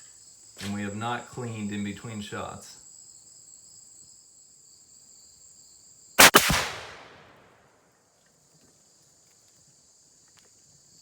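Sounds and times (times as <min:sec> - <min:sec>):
crickets chirping: 0:00.0 - 0:11.0
rifle shot with echo: 0:06.2 - 0:07.5.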